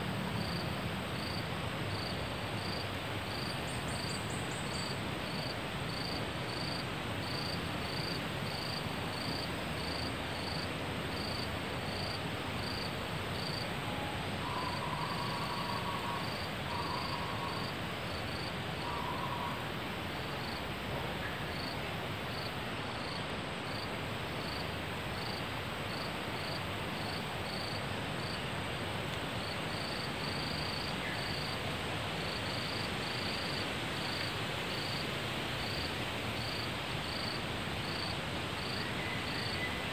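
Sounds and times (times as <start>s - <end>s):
high cricket-like chirp: 1.2s - 19.8s, 20.4s - 24.6s, 35.6s - 39.9s.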